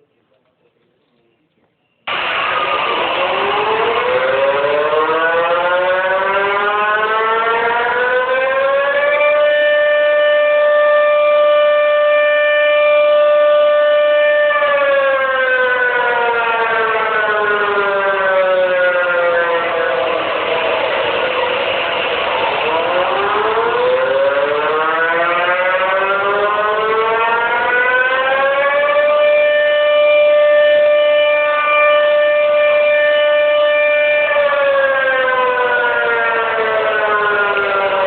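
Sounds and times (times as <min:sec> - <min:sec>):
warning siren wailing: 0:02.1 - 0:38.0.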